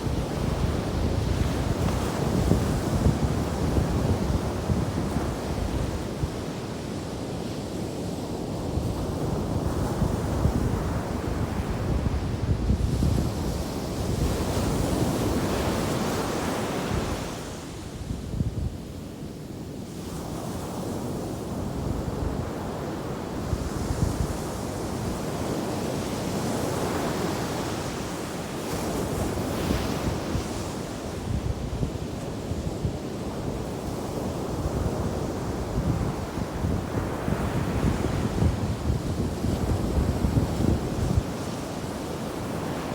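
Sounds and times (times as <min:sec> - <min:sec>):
wind buffeting microphone: 0:00.0 - 0:06.5, 0:08.5 - 0:17.2, 0:28.8 - 0:42.9.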